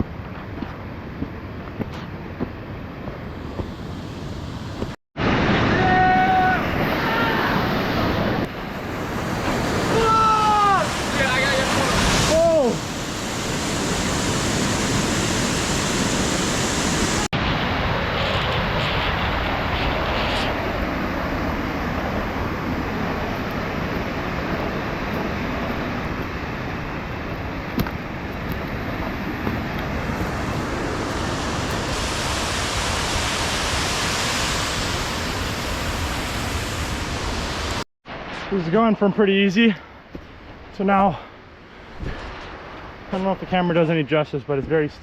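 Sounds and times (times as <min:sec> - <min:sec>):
creek and waterfall rushing: 0:05.2 - 0:17.3, 0:20.2 - 0:37.8.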